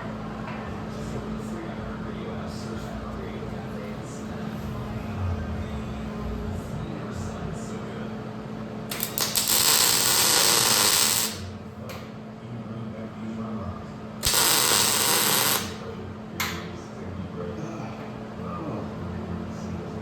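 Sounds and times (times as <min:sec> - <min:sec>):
steady low hum: 0:00.0 - 0:20.0
power tool hissing on metal: 0:08.9 - 0:11.5, 0:14.2 - 0:15.8.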